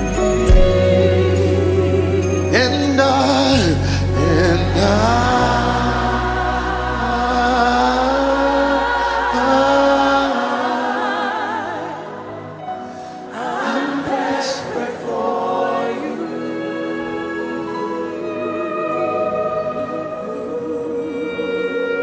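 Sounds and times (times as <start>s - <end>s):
deep bass drone: 0.0s - 9.8s
held chords: 0.0s - 14.0s
wordless singing with vibrato: 0.0s - 22.0s.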